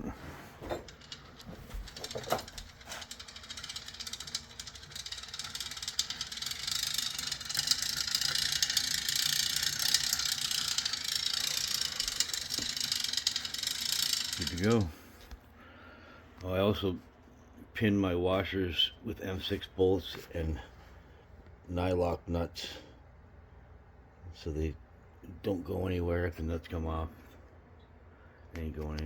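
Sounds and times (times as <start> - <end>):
freewheel ratchet clicking: 0.8 - 14.9.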